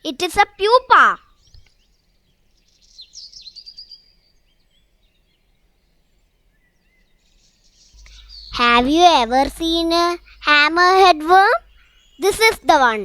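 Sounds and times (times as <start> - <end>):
faint bird chirps and whistles: 0.6 - 13.0.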